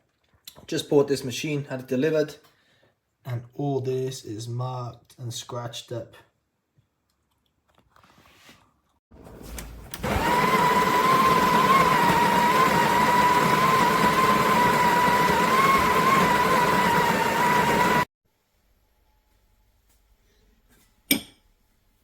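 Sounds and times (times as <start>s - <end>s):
espresso machine whirring: 9.9s - 18.1s.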